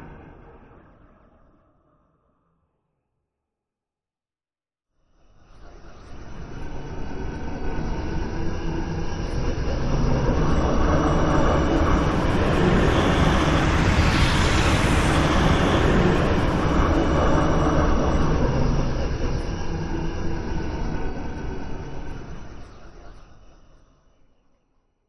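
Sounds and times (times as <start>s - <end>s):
deep rumbling breath-like rush: 7.7s - 22.5s.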